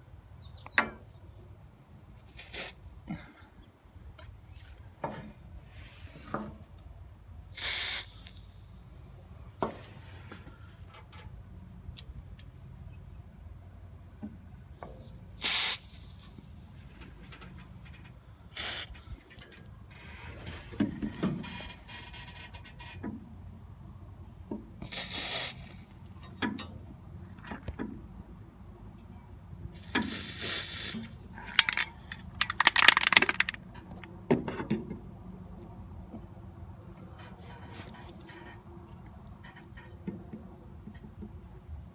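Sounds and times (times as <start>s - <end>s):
aerosol spray hissing: 7.6s - 8.3s, 24.9s - 25.8s, 29.8s - 31.8s.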